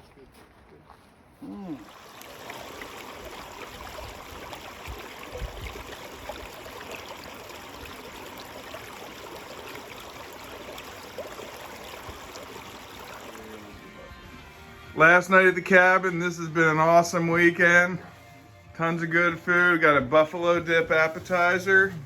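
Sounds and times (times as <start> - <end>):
creek water flowing: 1.6 - 14.8, 19.1 - 22.0.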